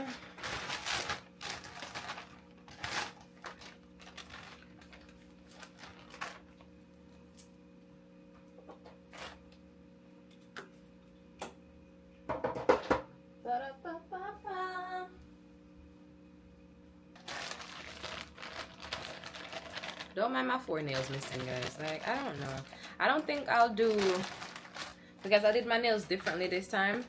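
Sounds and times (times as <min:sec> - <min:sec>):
packaging rustling and clicking: 0:00.4 - 0:06.7, 0:17.2 - 0:20.2, 0:20.9 - 0:27.0.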